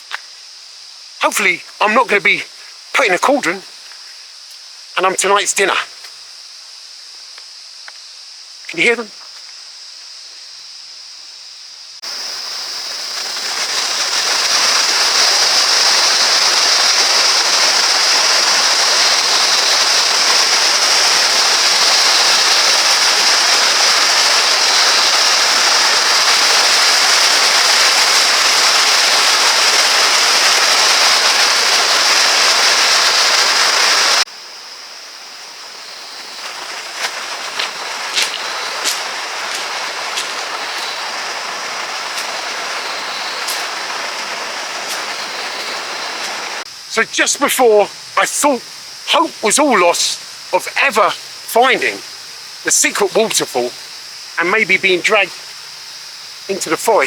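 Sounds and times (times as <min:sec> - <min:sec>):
rushing water: 0:01.2 - 0:03.8, 0:05.0 - 0:05.9, 0:08.7 - 0:09.1, 0:12.0 - 0:34.3, 0:35.5 - 0:57.0.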